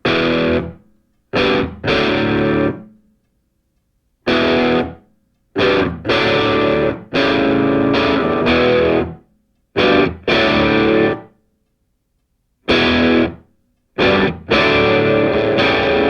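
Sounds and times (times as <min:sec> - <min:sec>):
distorted electric guitar chords: 0:00.0 - 0:00.8, 0:01.4 - 0:02.9, 0:04.3 - 0:05.0, 0:05.6 - 0:09.2, 0:09.8 - 0:11.3, 0:12.7 - 0:13.4, 0:14.0 - 0:16.0.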